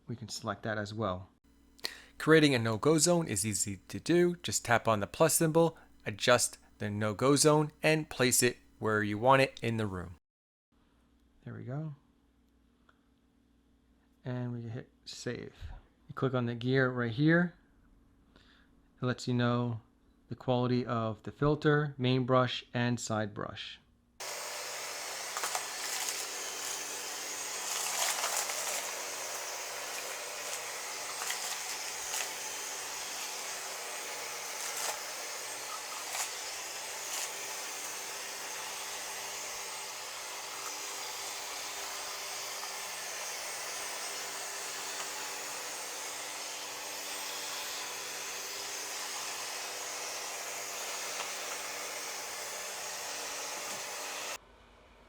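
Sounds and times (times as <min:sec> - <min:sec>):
robot vacuum whirring: 0:24.2 - 0:54.4.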